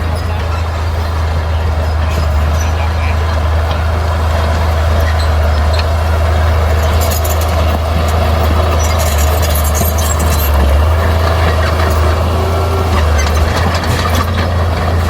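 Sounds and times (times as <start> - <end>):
bulldozer diesel engine rumbling: 0.0 - 15.0
metal clanks and scrapes: 6.7 - 12.2, 12.9 - 15.0.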